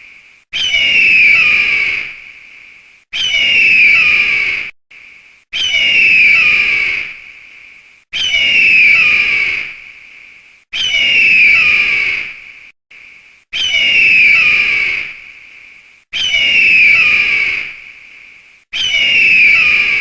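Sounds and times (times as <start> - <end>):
eagle screech: 0.5 - 2.2, 3.1 - 4.7, 5.5 - 7.2, 8.1 - 9.8, 10.7 - 12.4, 13.5 - 15.2, 16.1 - 17.8, 18.7 - 20.0.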